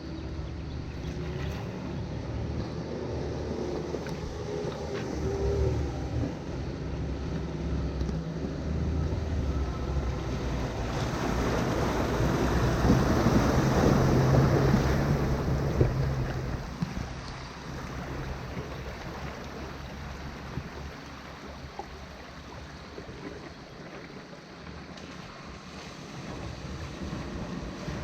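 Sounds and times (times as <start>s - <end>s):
vehicle engine running low: 0.0s - 28.0s
water surging and splashing: 0.0s - 28.0s.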